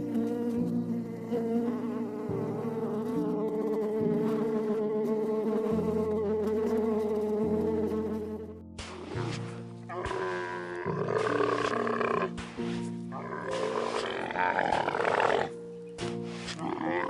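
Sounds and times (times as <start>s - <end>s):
flying insects buzzing: 0.0s - 17.0s.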